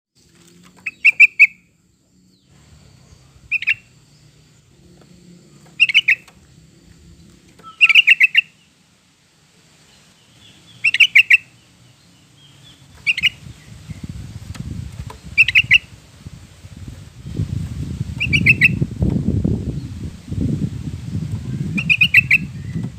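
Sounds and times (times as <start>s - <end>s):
bird singing bubbly phrases: 5.8s - 6.3s, 7.6s - 8.7s, 10.3s - 14.2s, 15.3s - 15.9s, 18.2s - 18.8s, 21.5s - 22.9s.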